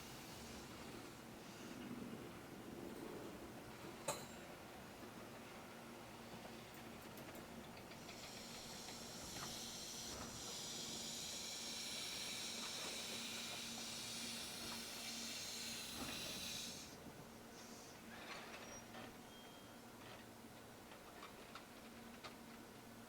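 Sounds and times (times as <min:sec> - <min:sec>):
train wheels squealing: 0:18.1 - 0:19.8.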